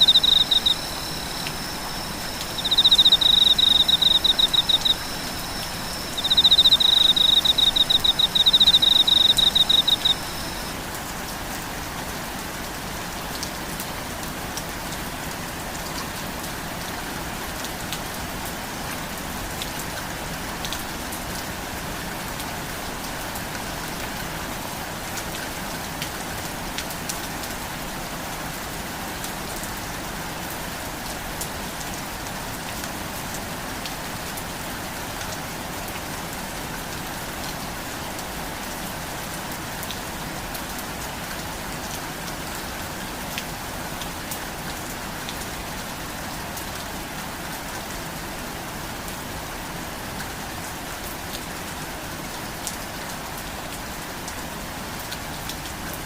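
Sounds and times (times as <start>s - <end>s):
raindrops ticking: 0.0s - 10.7s
rain pattering: 0.0s - 56.0s.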